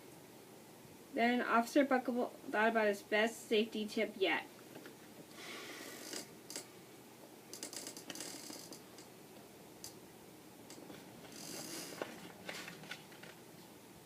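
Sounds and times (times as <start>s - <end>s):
book pages rustling: 10.8s - 13.4s.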